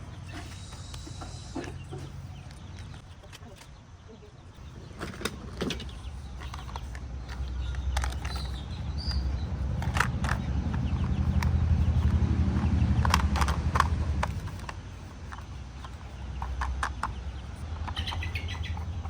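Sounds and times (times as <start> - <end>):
low engine rumble: 0.0 - 19.0
sharp clicks: 5.0 - 19.0.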